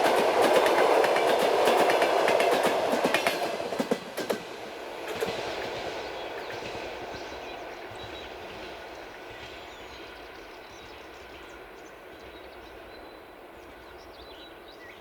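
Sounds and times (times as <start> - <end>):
train carriages rumbling on rails: 0.0 - 13.0
songbirds chirping: 5.0 - 15.0.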